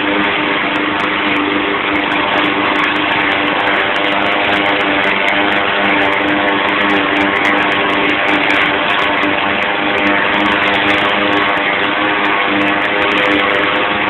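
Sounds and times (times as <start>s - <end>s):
lawn mower engine mowing grass: 0.0s - 14.0s.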